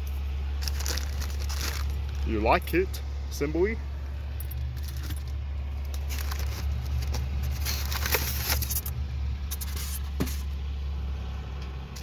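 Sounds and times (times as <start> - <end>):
packaging rustling and scraping: 0.0 - 2.3, 4.8 - 8.9, 9.5 - 10.5
steady low hum: 0.0 - 12.0.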